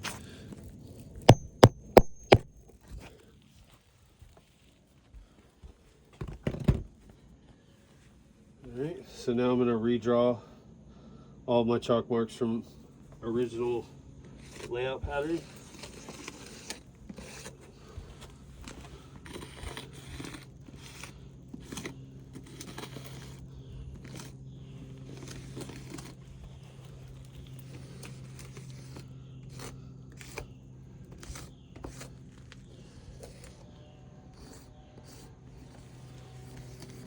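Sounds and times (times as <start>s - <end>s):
chalk scraping on roof shingles: 13.4s - 37.0s.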